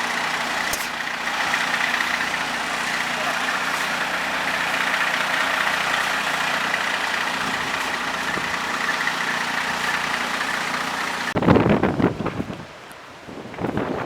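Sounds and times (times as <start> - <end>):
large engine idling: 0.0 - 11.4
wind buffeting microphone: 5.8 - 10.3, 11.3 - 14.0.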